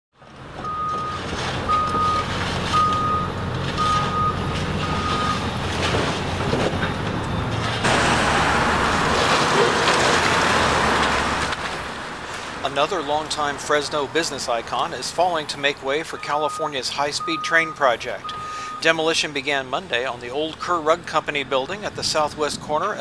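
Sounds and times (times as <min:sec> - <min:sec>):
diesel engine running: 0:00.2 - 0:21.3
backup alarm beeping: 0:00.6 - 0:05.6, 0:16.0 - 0:19.0
loud rushing noise: 0:04.8 - 0:14.1.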